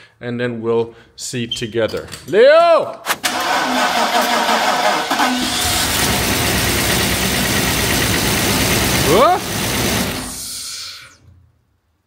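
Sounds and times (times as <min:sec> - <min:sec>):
engine cranking: 0:03.2 - 0:10.5
car engine running: 0:05.2 - 0:10.5.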